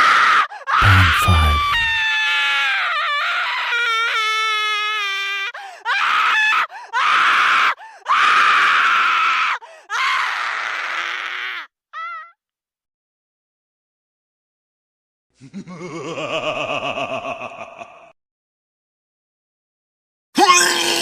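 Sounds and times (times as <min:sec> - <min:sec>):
cartoon voice screaming: 0:00.8 - 0:02.1.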